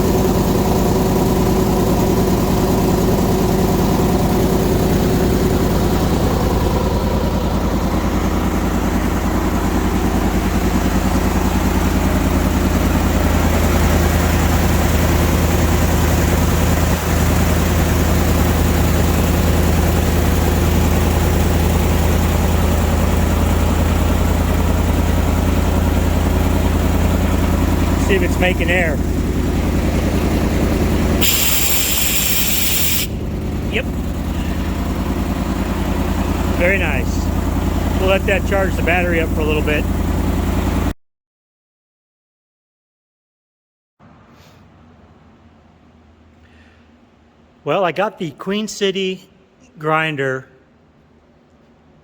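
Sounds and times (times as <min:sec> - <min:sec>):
air compressor engine humming: 0:00.0 - 0:40.9.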